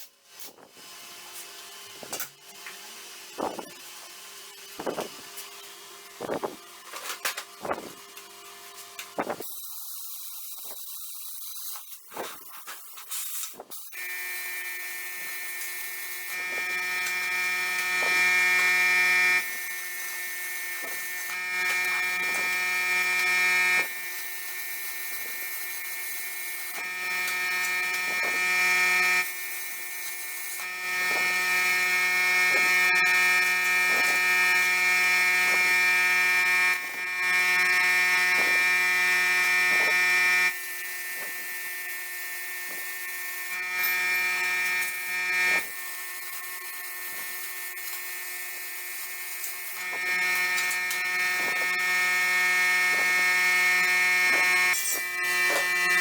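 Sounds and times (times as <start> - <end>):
electric power tool running: 13.9 - 56.0.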